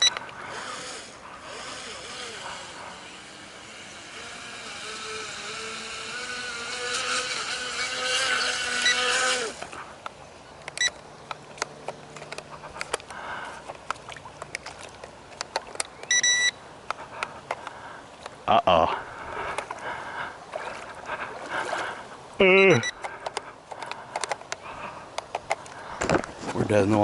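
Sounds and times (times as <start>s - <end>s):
model boat motor whining: 0.0s - 10.0s
short electronic beeps: 8.8s - 9.2s, 16.0s - 16.6s, 22.7s - 23.0s.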